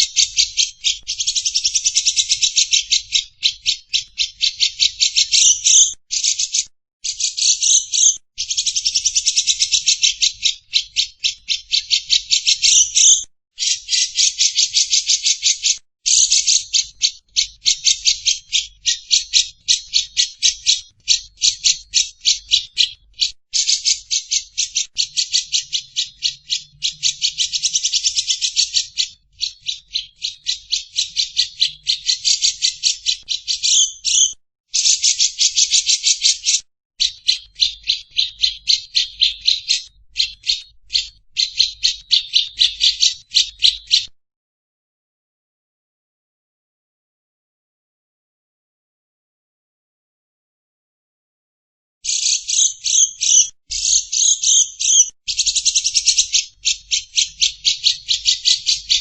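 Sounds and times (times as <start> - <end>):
bird chattering song: 0.0 - 44.1, 52.1 - 59.0.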